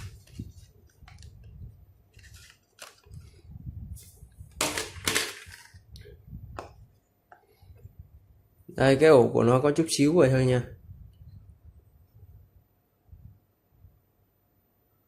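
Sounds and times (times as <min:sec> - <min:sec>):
packaging crinkling and rustling: 0:02.1 - 0:03.4.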